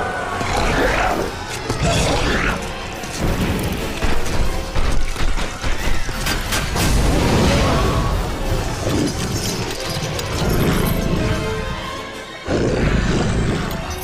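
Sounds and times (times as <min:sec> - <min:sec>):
dramatic orchestral score: 0:00.0 - 0:14.0
sharp crashes and booms: 0:03.2 - 0:09.4.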